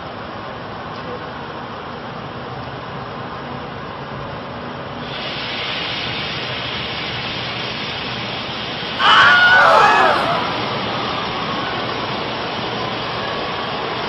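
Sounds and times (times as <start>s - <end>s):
loud falling scream: 9.0s - 11.2s.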